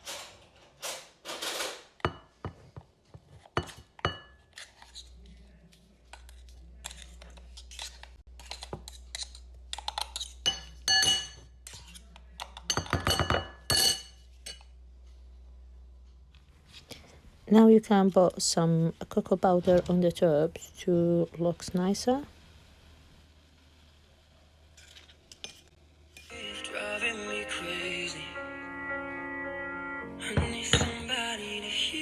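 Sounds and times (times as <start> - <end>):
kitchenware clinking: 1.4 - 2.7, 3.4 - 4.9, 7.8 - 14.7, 30.4 - 31.1
faint low hum: 10.6 - 25.1.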